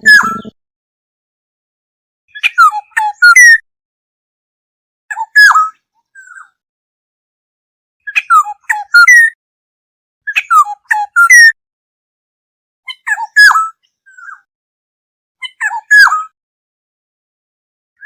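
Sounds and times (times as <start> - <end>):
bird whistling sliding notes: 0.0 - 0.6.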